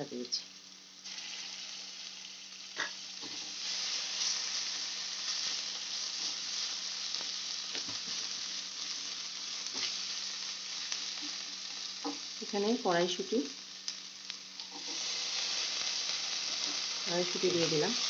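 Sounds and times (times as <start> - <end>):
vegetables sizzling in hot oil: 0.0 - 18.0.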